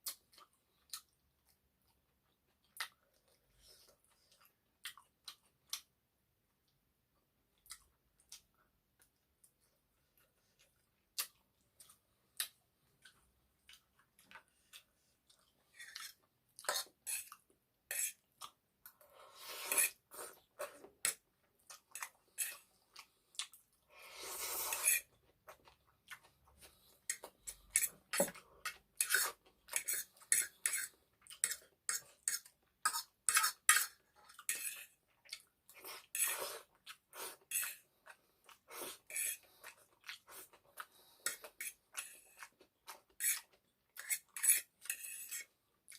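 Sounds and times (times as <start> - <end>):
close-up chewing: 25.1 - 45.9.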